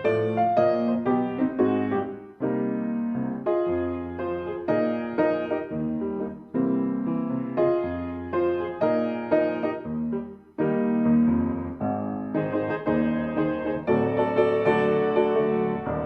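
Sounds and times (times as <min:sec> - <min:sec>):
gentle piano music: 0:00.0 - 0:16.0.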